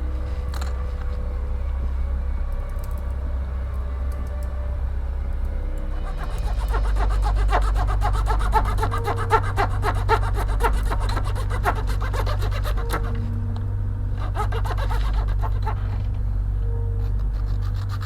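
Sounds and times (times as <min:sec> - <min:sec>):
steady low hum: 0:00.0 - 0:18.0
hand tool scraping wood: 0:06.0 - 0:13.2, 0:14.2 - 0:16.1.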